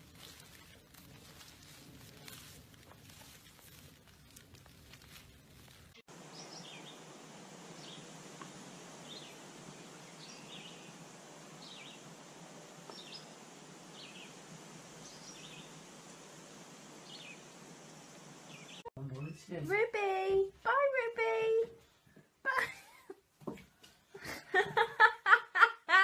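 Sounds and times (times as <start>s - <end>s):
background hiss: 0.0s - 26.0s
small bird chirping: 0.2s - 7.0s, 11.6s - 12.1s, 12.8s - 14.4s, 15.0s - 15.8s, 17.0s - 17.5s
faint taps and rustling: 23.4s - 24.0s.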